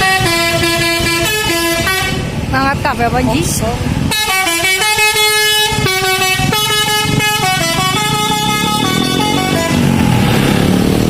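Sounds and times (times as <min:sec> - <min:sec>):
bus air horns playing a tune: 0:00.0 - 0:02.4, 0:04.0 - 0:10.0
engine revving: 0:03.4 - 0:11.0.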